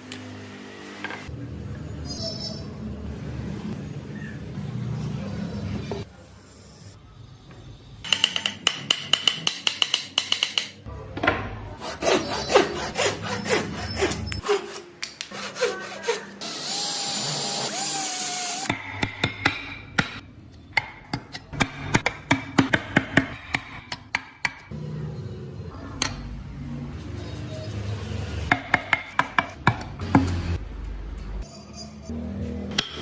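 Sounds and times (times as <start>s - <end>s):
rasping and sawing wood: 11.8s - 16.4s.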